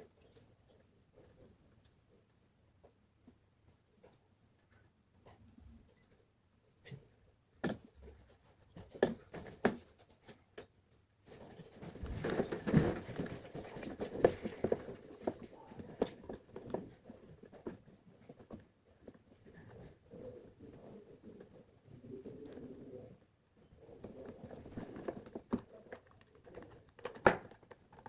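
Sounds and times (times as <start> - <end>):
rustling wires and plastic parts: 11.3 - 28.0.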